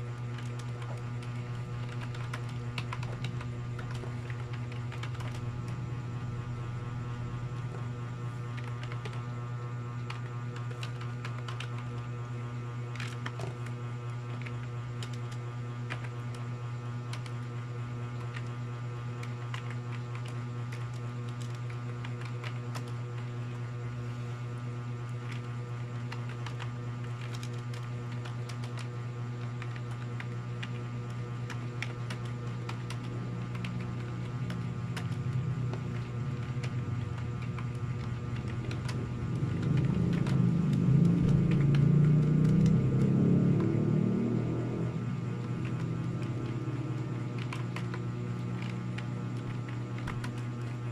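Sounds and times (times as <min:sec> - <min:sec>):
low electrical hum: 0:00.0 - 0:50.9
keyboard typing clicks: 0:00.3 - 0:05.8, 0:08.5 - 0:09.3, 0:10.0 - 0:12.0, 0:25.2 - 0:44.5, 0:45.4 - 0:50.9.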